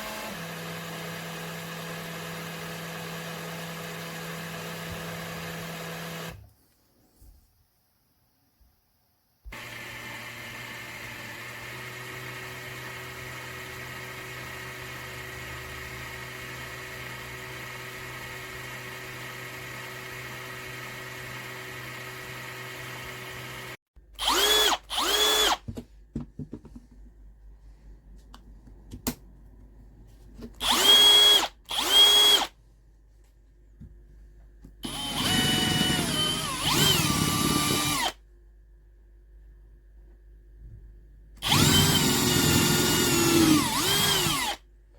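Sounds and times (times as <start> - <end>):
cordless drill motor running: 0.0 - 6.4, 9.5 - 25.6, 30.6 - 32.5, 34.8 - 38.2, 41.4 - 44.6.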